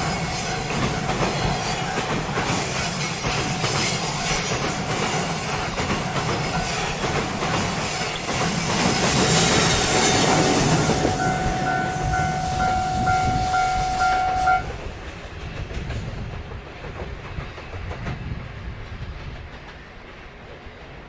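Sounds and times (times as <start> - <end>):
train wheels clacking over rails: 0.0 - 21.0
level crossing alarm ringing: 7.7 - 14.7.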